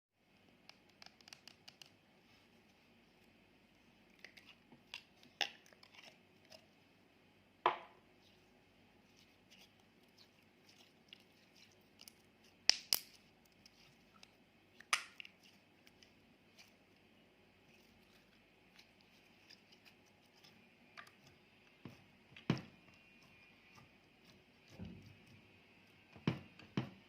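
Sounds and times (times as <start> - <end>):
small objects clicking and tapping: 0.6 - 2.0, 12.0 - 13.2, 14.1 - 15.4.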